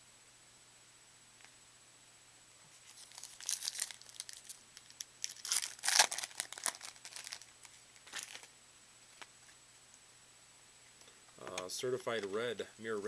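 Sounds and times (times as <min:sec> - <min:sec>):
packaging crinkling: 0:02.8 - 0:08.5.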